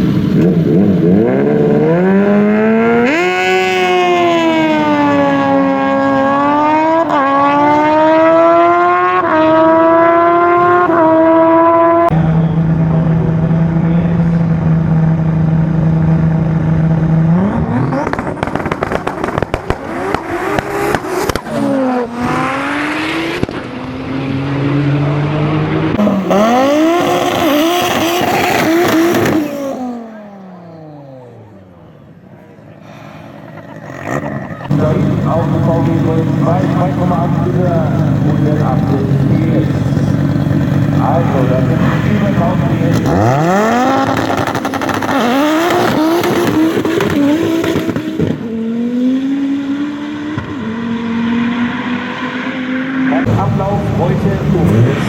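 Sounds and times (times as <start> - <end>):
drag racing engines revving: 0.0 - 55.0
crackling exhaust: 12.1 - 21.6, 32.8 - 48.4.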